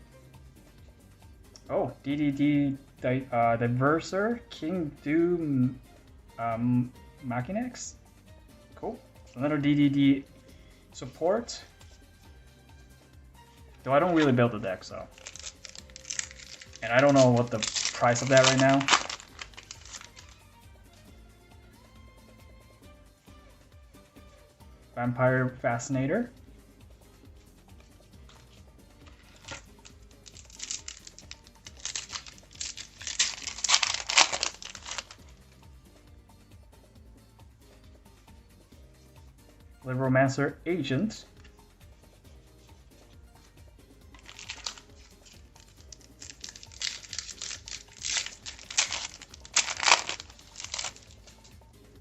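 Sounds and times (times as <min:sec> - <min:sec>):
quiet background music: 0:00.0 - 0:52.0
foil wrapper crinkling and tearing: 0:15.1 - 0:20.4, 0:29.1 - 0:35.2, 0:44.2 - 0:51.5.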